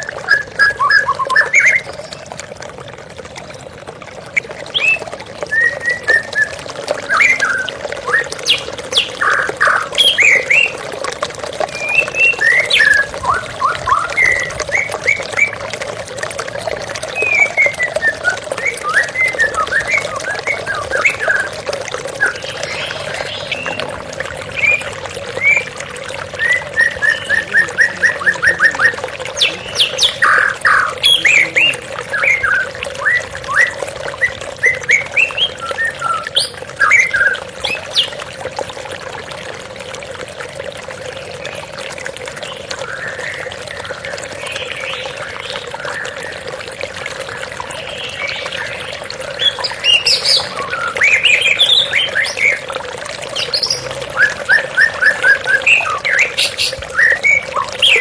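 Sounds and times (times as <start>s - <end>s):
flowing water: 0.0s - 58.0s
songbirds chirping: 16.6s - 38.2s, 47.4s - 58.0s.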